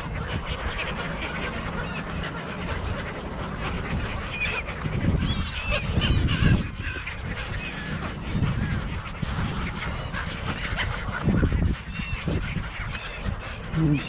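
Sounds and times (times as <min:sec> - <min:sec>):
gulls squawking: 0:00.0 - 0:14.0.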